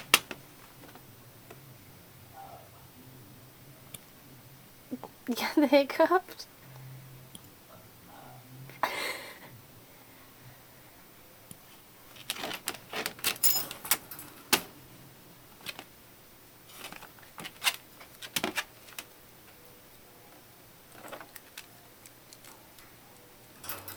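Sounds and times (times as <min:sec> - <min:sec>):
rustling: 0:11.7 - 0:14.8, 0:16.6 - 0:19.6
metal collar tags jingling: 0:13.2 - 0:14.6, 0:23.6 - 0:23.9.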